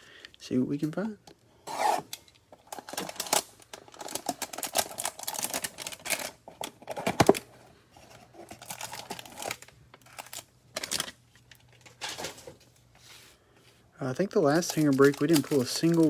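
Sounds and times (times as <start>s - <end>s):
cardboard packaging tearing: 2.7s - 7.5s, 8.1s - 12.4s, 14.5s - 16.0s.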